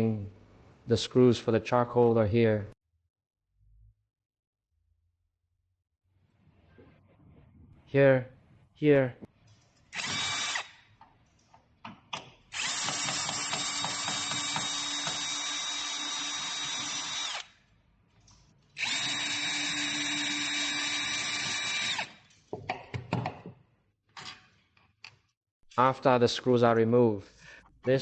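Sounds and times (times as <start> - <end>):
power screwdriver whirring: 9.9 - 10.8, 12.5 - 17.5, 18.8 - 22.2.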